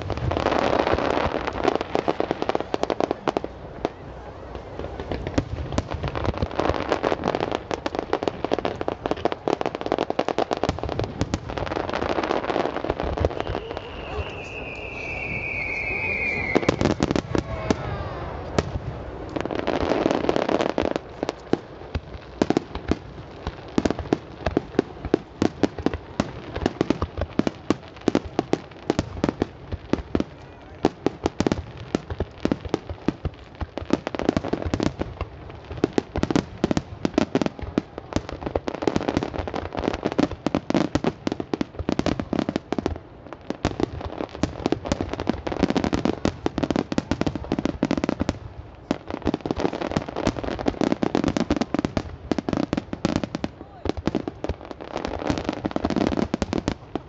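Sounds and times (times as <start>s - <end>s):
crackling firework bursts: 0.0s - 57.0s
fireworks shells bursting: 13.3s - 17.3s.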